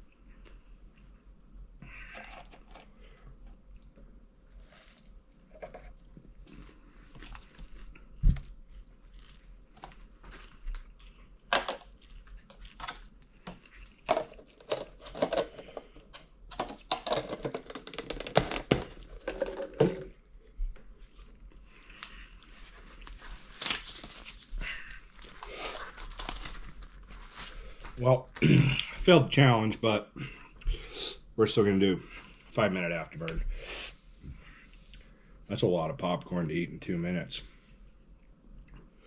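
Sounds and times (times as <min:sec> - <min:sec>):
popcorn being chewed: 0:02.0 - 0:19.9, 0:20.7 - 0:28.9.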